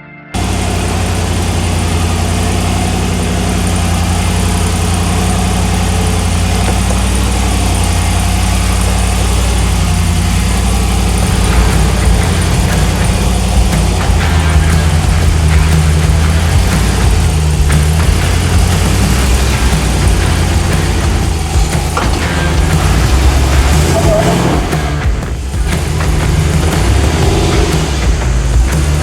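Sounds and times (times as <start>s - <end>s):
engine running at low revs: 0.4s - 29.0s.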